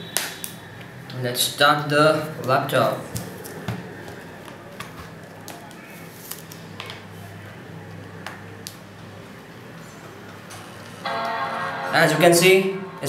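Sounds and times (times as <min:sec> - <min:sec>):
low hum: 0:11.0 - 0:13.0.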